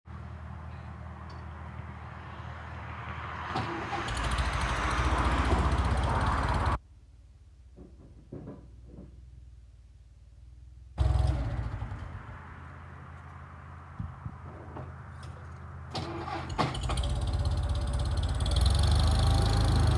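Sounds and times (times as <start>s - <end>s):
diesel crawler engine running: 3.5s - 6.8s, 11.0s - 13.3s, 14.5s - 19.9s
knocks: 7.7s - 9.3s.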